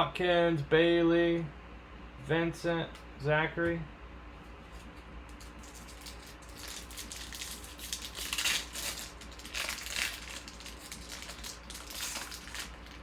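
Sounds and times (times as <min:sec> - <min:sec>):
crinkly wrapping rustling: 0:04.7 - 0:13.0.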